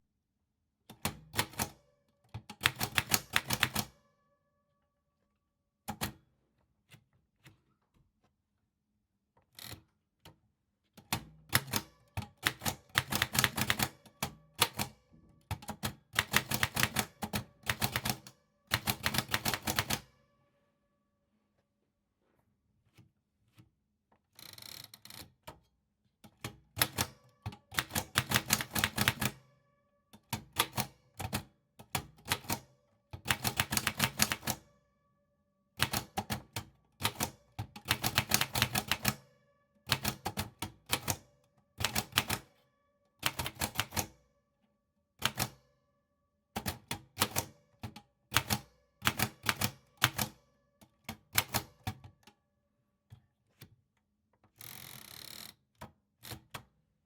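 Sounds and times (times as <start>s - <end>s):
typewriter keys clacking: 26.8s - 29.4s, 33.2s - 34.6s, 35.8s - 39.2s.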